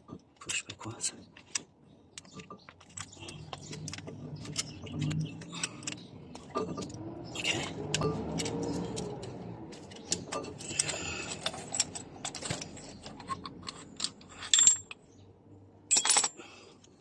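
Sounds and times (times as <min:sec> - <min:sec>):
hand tools clicking on metal: 0:02.2 - 0:14.9
metallic clatter: 0:02.2 - 0:15.0.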